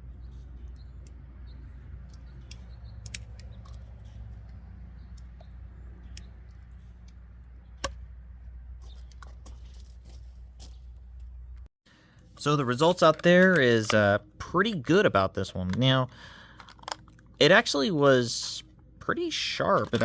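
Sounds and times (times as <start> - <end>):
multitool clicks and snaps: 2.1 - 3.8.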